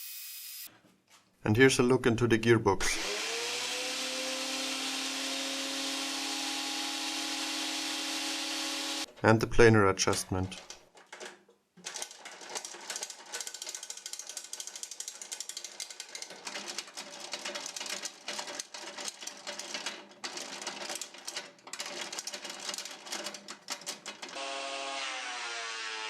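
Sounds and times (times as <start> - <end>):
gears clicking and rattling: 10.0 - 24.4.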